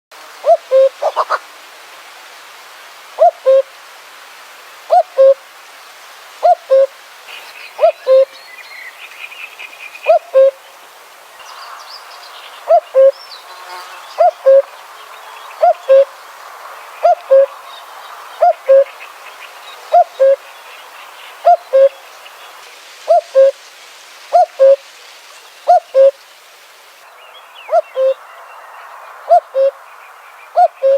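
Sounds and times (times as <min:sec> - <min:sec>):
bird two-note hoot: 0:27.7 - 0:28.2, 0:30.6 - 0:30.9.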